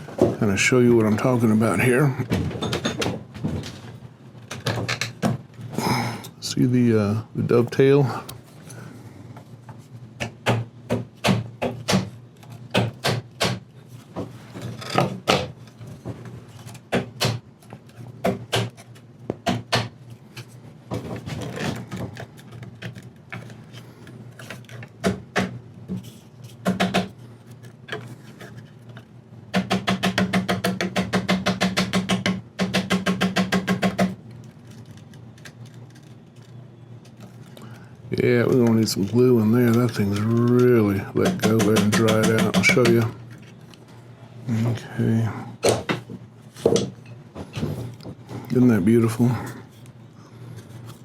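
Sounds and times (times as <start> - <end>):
low steady hum: 33.6 - 51.0
wood knocking on wood: 41.2 - 43.1.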